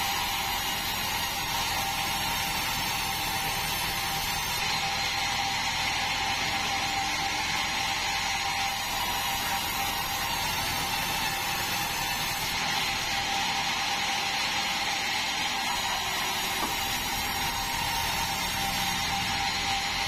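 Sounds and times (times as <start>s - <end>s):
band sawmill running: 0.0s - 20.0s.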